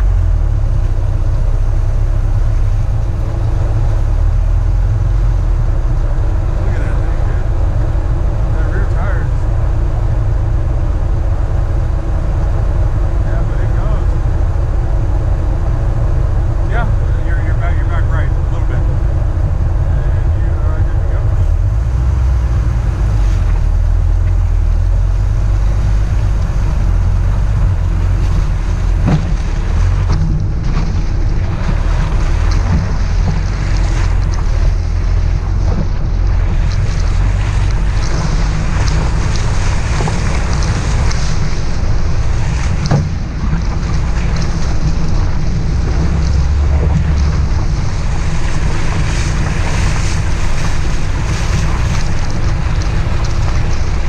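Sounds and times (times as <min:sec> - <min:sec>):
car engine and road rumble: 0:00.0 - 0:54.0
wind buffeting microphone: 0:00.0 - 0:54.0
suspension and stone knocks: 0:27.0 - 0:54.0.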